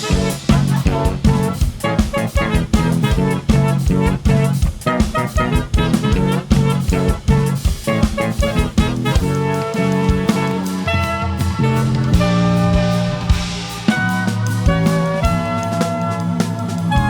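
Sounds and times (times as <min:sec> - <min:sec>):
band playing instrumental music: 0:00.0 - 0:17.0.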